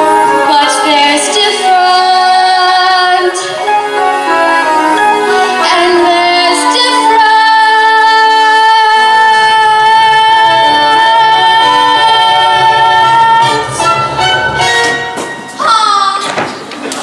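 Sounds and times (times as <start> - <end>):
woman singing a long high note: 0.0 - 14.2
musical accompaniment: 0.0 - 16.6
low bass notes: 9.4 - 15.6.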